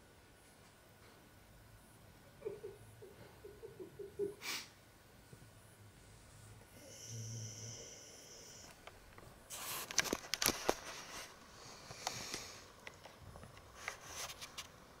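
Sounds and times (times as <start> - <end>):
dog snoring: 6.7 - 8.7.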